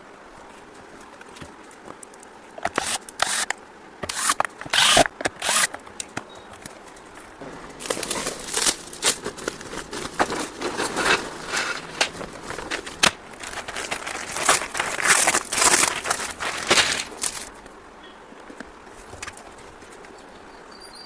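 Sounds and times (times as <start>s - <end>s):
crinkling and rustling: 0.3s - 17.8s, 18.4s - 20.4s
sharp clicks of handled parts: 2.0s - 6.8s, 11.6s - 17.5s.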